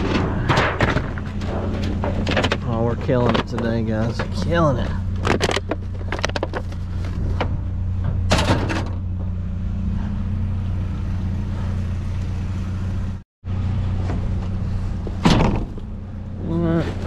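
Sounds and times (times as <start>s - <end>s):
knocks and rattles: 0.0s - 9.4s
engine idling: 0.0s - 17.0s.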